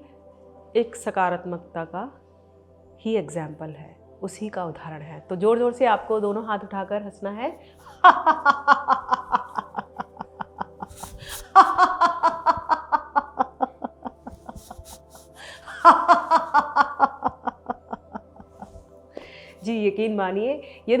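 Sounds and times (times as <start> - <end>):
person laughing loudly: 7.9 - 18.8.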